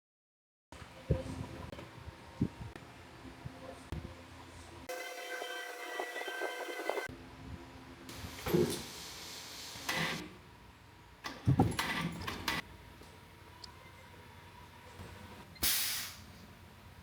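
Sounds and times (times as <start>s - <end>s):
metal parts clanking and rattling: 11.3s - 12.6s.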